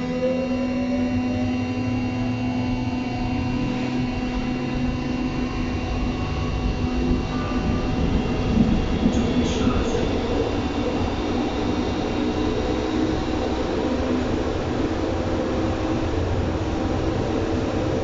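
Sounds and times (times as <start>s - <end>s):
electric train motors whining: 0.0s - 18.0s
train running gear rumble: 0.0s - 18.0s.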